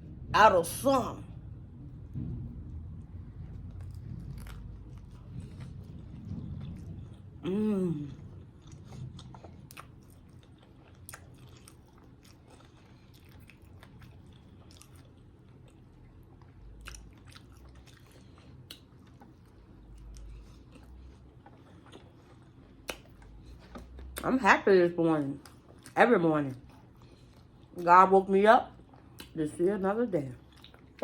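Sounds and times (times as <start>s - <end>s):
close chewing and biting: 3.2s - 24.3s, 30.4s - 31.0s.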